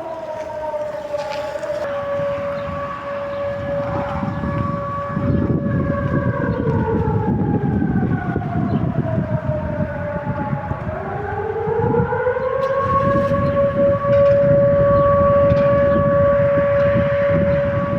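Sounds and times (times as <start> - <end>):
sirens wailing: 0.0 - 17.9.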